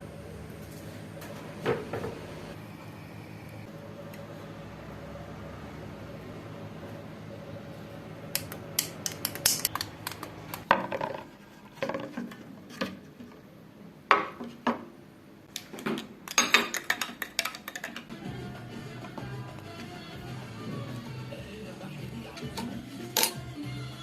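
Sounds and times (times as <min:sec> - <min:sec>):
jars clinking and knocking: 0:15.7 - 0:18.1.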